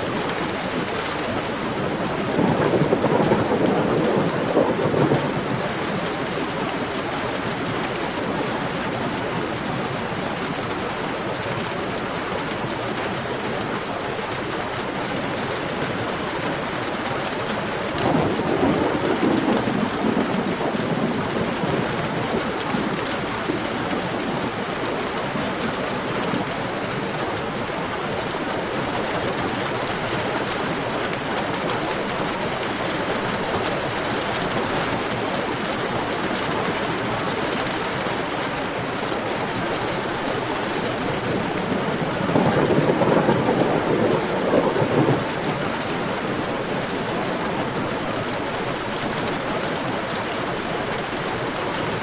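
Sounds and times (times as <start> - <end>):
heavy rain falling: 0.0 - 52.0
low rumble of thunder: 0.1 - 10.2, 17.7 - 24.8, 40.4 - 48.1.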